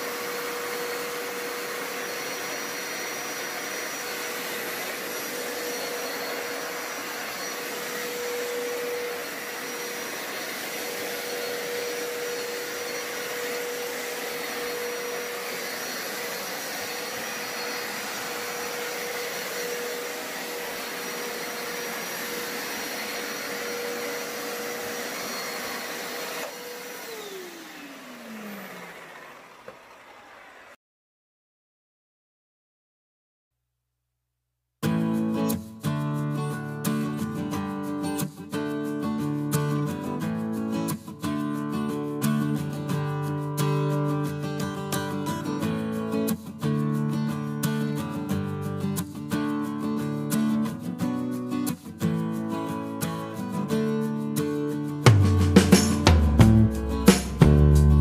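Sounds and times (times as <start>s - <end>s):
carpet cleaner motor whining: 0.0s - 30.8s.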